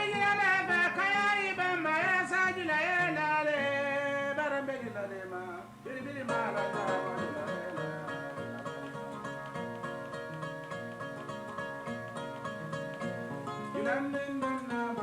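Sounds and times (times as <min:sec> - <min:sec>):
man singing: 0:00.0 - 0:09.6, 0:13.6 - 0:15.0
plucked harp-lute: 0:06.3 - 0:15.0.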